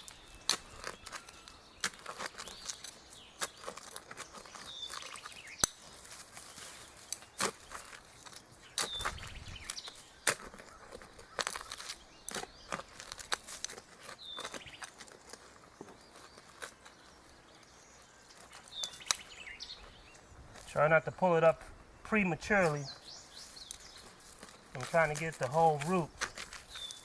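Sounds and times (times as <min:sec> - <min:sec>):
bird chirps: 0:00.0 - 0:08.0, 0:08.6 - 0:13.1, 0:13.7 - 0:15.0, 0:15.6 - 0:27.0
digging tool scraping soil: 0:00.0 - 0:17.2, 0:22.1 - 0:27.0.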